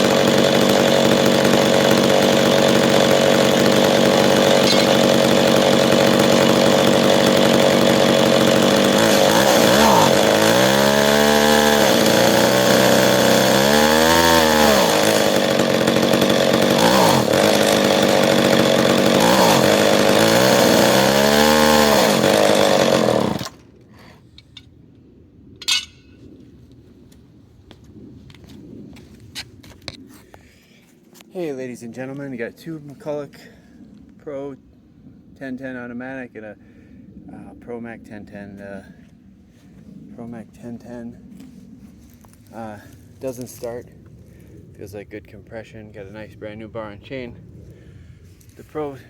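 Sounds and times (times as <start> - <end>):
chainsaw idling and revving: 0.0 - 24.1.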